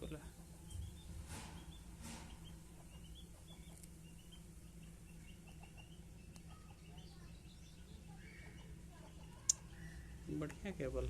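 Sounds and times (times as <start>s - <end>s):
low steady hum: 0.0s - 11.0s
small birds chirping: 0.0s - 11.0s
soft brushing noises: 0.7s - 2.9s.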